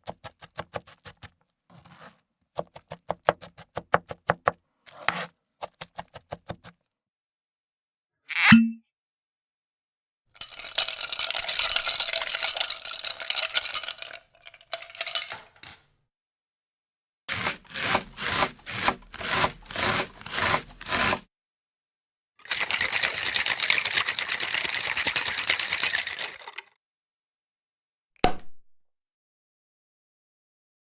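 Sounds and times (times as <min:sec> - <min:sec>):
metal clinking against cookware: 0:10.4 - 0:15.9.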